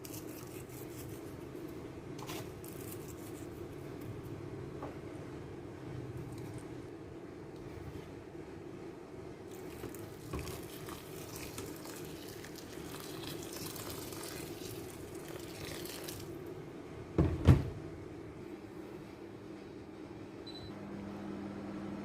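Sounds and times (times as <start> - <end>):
water running from a tap: 9.6 - 16.3.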